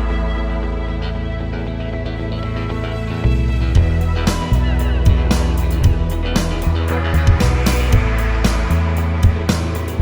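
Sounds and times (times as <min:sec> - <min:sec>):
sustained bass: 0:00.0 - 0:10.0
drum hits: 0:03.8 - 0:10.0.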